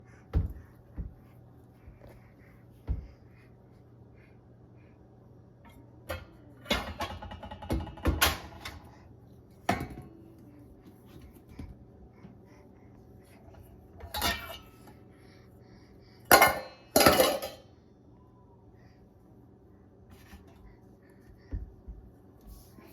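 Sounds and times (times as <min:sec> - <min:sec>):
metal pots and pans clattering: 0:05.7 - 0:08.8, 0:14.0 - 0:14.9, 0:16.3 - 0:17.6.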